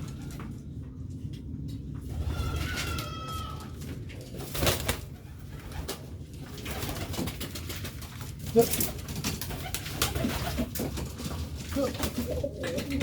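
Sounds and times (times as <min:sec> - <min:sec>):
pigeons cooing: 0:08.5 - 0:13.0.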